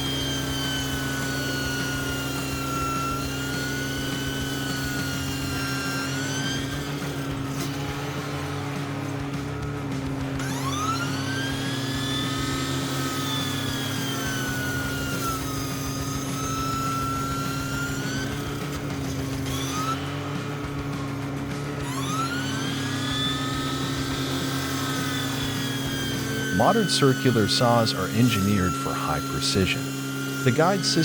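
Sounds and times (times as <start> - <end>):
machine engine running: 0.0 - 31.0
saw blade whine: 0.0 - 31.0.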